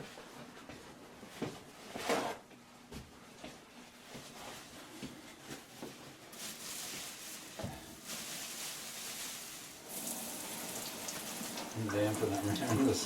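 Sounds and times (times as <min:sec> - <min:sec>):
kitchen sink tap running: 0:09.8 - 0:13.0.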